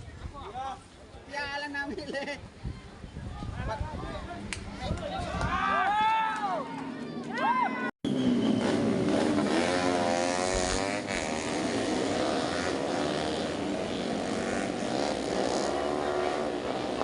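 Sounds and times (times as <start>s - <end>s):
motorcycle engines at high revs: 8.1s - 17.0s.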